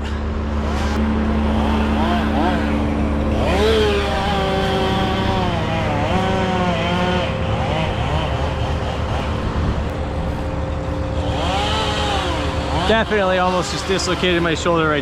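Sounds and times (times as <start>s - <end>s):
rising and falling tones: 0.0s - 13.0s
engine running: 0.0s - 15.0s.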